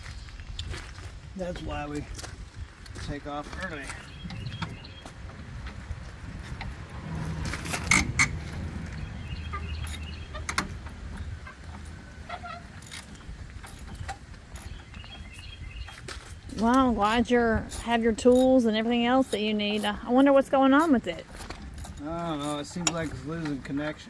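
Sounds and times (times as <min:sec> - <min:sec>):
low steady rumble: 0:03.9 - 0:23.8
metal tools clinking: 0:07.5 - 0:08.6, 0:09.4 - 0:24.0.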